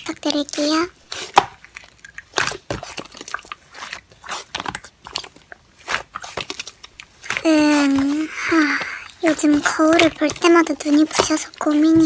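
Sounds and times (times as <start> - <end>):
slime squished by hand: 0.0 - 12.0.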